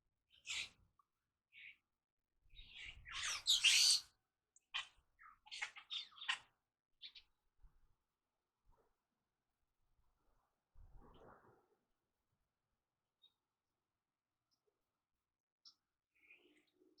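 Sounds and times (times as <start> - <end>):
birds harsh chirps: 2.6 - 4.0.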